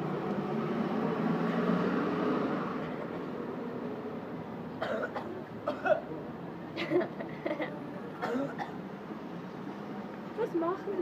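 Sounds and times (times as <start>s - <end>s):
passing vehicle engine: 0.0s - 4.2s.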